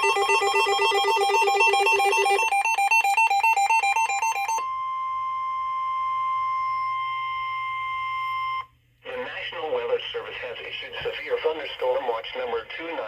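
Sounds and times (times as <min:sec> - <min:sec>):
warbling electronic alert tones: 0:00.0 - 0:04.6
steady single-pitch alert tone: 0:00.0 - 0:08.7.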